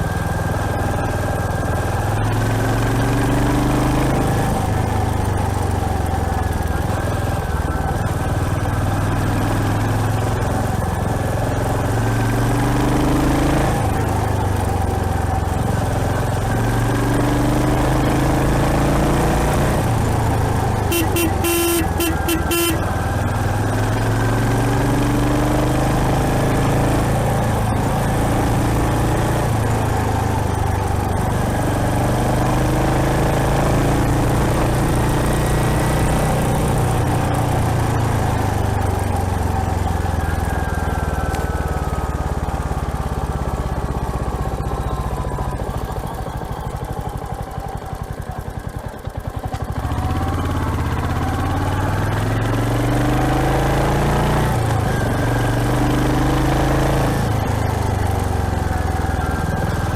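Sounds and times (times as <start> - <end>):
motorcycle engine revving: 0.0 - 59.9
horn short toots: 20.8 - 23.0.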